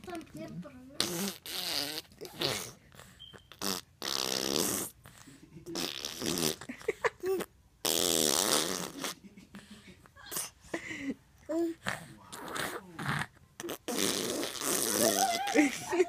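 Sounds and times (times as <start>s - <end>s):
baby blowing raspberries: 1.0s - 5.2s, 5.8s - 6.7s, 7.4s - 9.2s, 11.8s - 16.0s.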